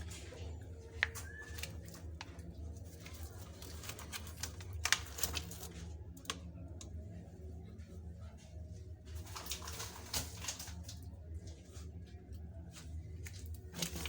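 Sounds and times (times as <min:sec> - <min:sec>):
plastic food packets rustling: 0:00.0 - 0:07.0, 0:09.1 - 0:11.3, 0:13.0 - 0:14.0
steady low hum: 0:00.0 - 0:14.0.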